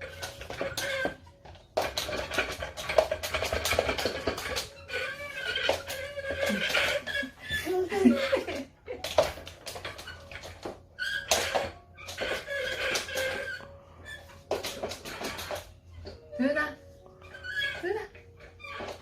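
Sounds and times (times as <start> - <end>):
toddler babbling and giggling: 7.5 - 8.7.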